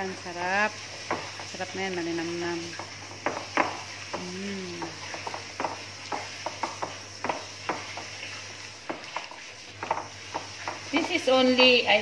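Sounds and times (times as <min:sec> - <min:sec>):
person humming: 0:04.2 - 0:05.0
wet clicks and taps in a bowl: 0:04.8 - 0:08.2, 0:08.8 - 0:10.9.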